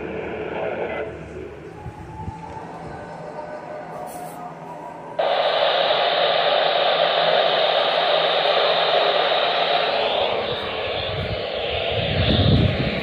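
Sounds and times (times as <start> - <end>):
radio static hiss: 0.0 - 1.6, 5.2 - 13.0.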